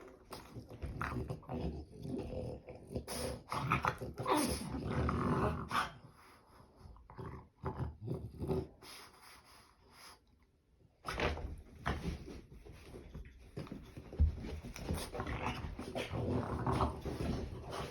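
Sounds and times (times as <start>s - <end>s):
bulldog making weird noises: 0.8s - 6.0s.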